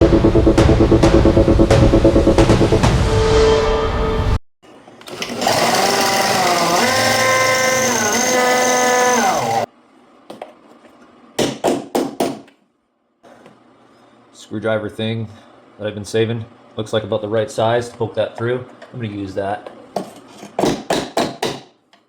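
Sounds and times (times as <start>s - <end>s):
power drill whining: 5.0s - 9.7s.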